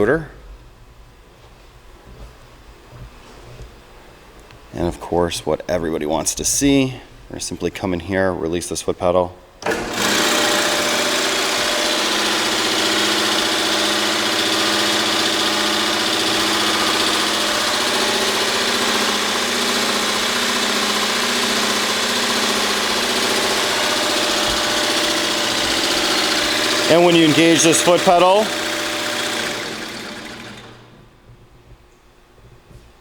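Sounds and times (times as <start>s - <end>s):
jig saw running: 9.6s - 31.2s
steady machine tones: 11.0s - 31.3s.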